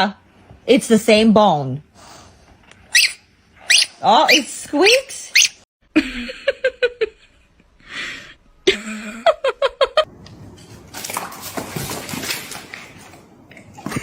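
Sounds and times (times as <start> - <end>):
squeaky dog toy squeaking: 2.9 - 5.6.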